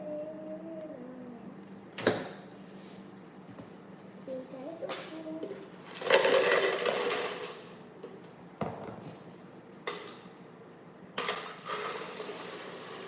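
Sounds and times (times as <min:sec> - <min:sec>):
plastic toys rattling and scraping: 0:05.8 - 0:07.7, 0:11.2 - 0:13.0.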